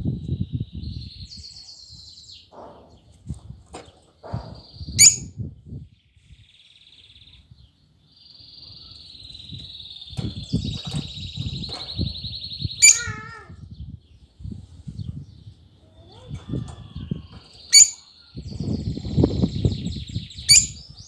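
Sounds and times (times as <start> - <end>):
lovebird chattering: 5.0 - 5.3, 10.4 - 13.4, 17.1 - 18.1, 20.2 - 20.9
sharp loud squeak: 5.0 - 5.3.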